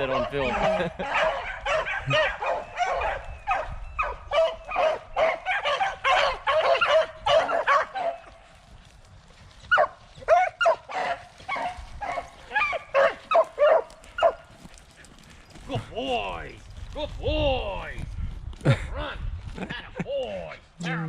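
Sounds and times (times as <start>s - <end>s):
hounds baying and yelping: 0.0s - 8.6s, 9.6s - 15.7s.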